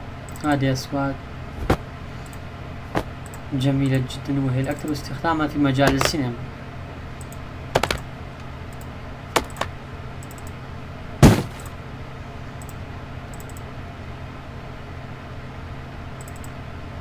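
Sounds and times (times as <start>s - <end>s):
steady low hum: 0.0s - 17.0s
heavy punch impact: 1.6s - 1.8s, 11.2s - 11.7s
computer mouse clicks: 12.6s - 13.6s, 16.2s - 16.6s.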